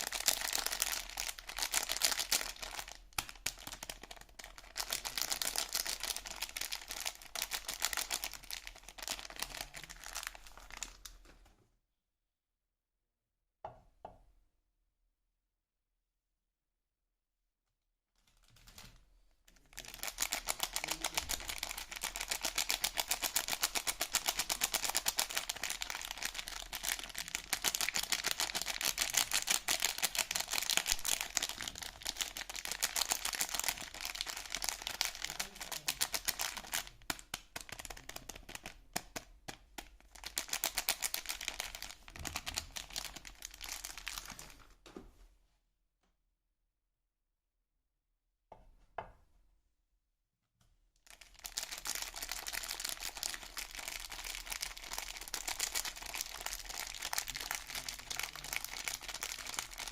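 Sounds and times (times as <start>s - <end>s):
packaging crackling: 19.7s - 44.6s, 51.1s - 59.9s.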